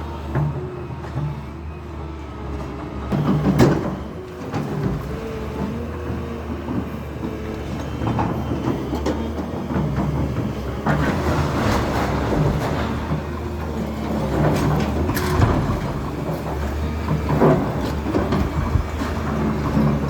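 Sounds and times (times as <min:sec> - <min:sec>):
heavy engine running: 0:00.0 - 0:20.0
debris clattering and knocking: 0:08.0 - 0:20.0.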